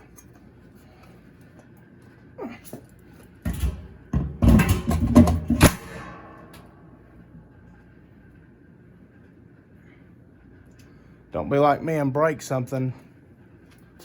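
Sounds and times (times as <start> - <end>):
metal parts clanking: 3.4 - 6.7.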